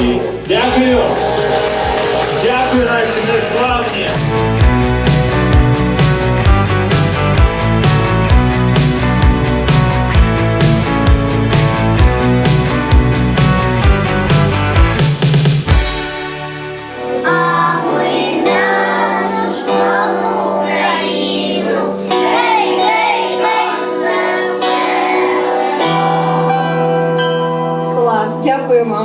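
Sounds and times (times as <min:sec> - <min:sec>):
high singing voices: 0:00.0 - 0:04.6
held bass notes: 0:00.0 - 0:17.2.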